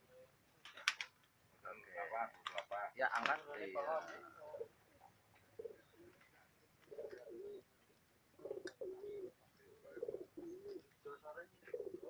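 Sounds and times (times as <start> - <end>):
pigeon cooing: 4.1 - 4.8, 5.5 - 7.7, 8.3 - 11.0, 11.6 - 12.0.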